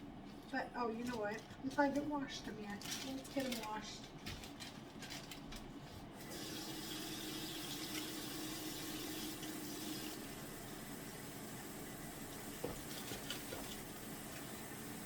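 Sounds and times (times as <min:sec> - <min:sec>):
tap water running into sink: 0:06.2 - 0:15.0.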